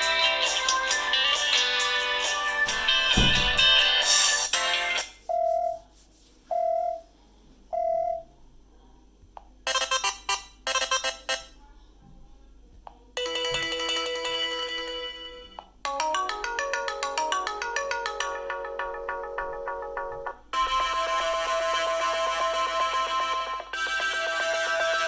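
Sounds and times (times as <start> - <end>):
melodic ringtone: 13.2 - 25.0.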